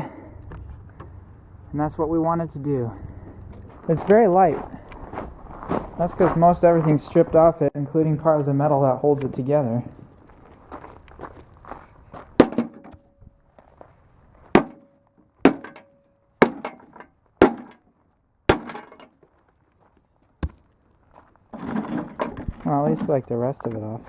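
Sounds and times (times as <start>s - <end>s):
hammer striking metal: 14.6s - 17.8s, 18.5s - 19.1s.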